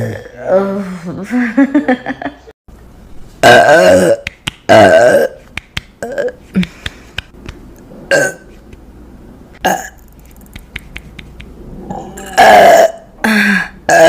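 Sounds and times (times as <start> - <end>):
woman burping: 3.4 - 5.4, 8.1 - 8.4, 9.6 - 10.0, 11.9 - 14.0.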